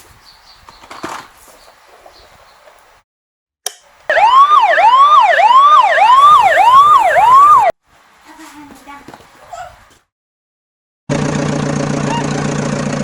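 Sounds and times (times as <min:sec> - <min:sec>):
toy electronic siren: 0:04.1 - 0:07.7.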